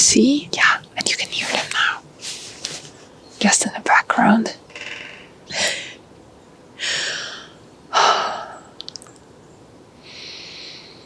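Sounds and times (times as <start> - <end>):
soft hiss: 0.0 - 11.0
person breathing: 1.6 - 3.0, 4.7 - 6.0, 6.8 - 8.7, 10.0 - 11.0
faint ticks: 8.8 - 9.3.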